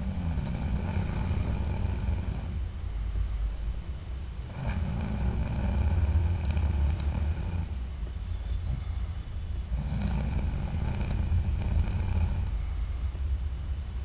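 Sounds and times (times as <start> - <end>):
man snoring: 0.0 - 2.7, 4.4 - 7.8, 8.6 - 13.0.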